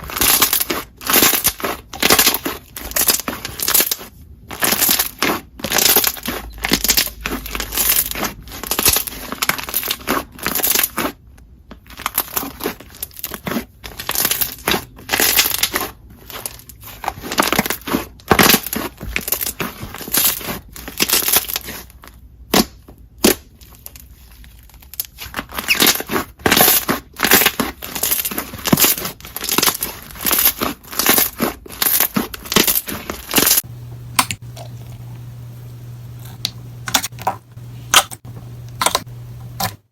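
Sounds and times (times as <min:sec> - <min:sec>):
slime crackling and popping: 0:11.8 - 0:39.8.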